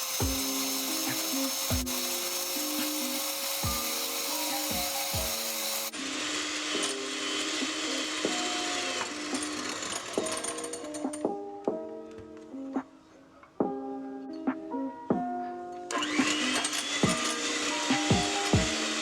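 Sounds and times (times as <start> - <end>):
electric hand mixer whirring: 0.0 - 10.9, 15.9 - 19.0
background music: 0.0 - 19.0.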